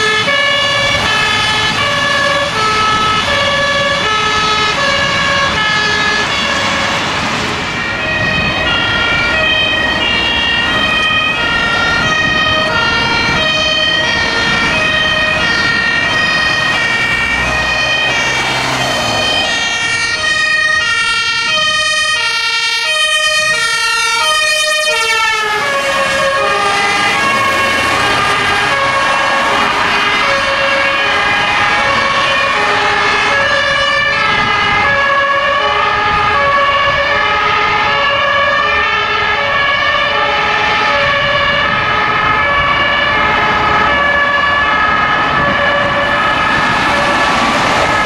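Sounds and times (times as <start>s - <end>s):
fire engine two-tone sirens: 0.0s - 48.0s
truck engines running: 0.0s - 48.0s.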